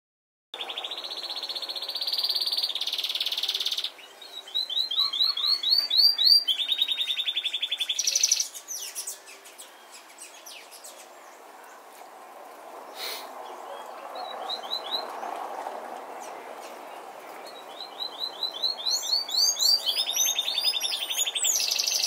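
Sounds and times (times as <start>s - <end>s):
songbird singing: 0.6s - 22.0s.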